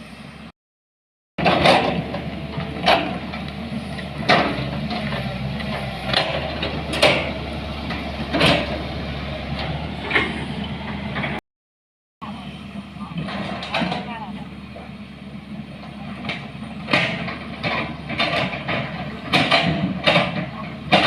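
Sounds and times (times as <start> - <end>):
vehicle engine running: 1.8 - 11.4.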